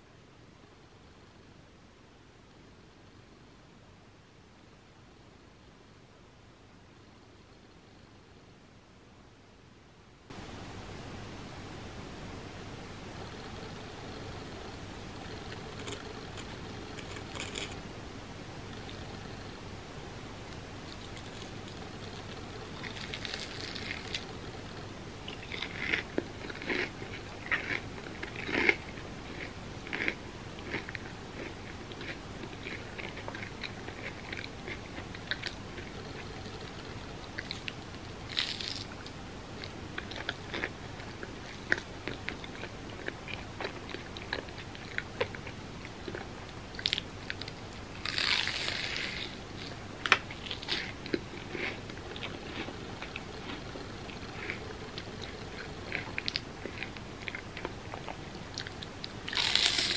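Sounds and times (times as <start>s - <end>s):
crunchy chewing and biting: 15.2s - 17.8s, 20.8s - 59.9s.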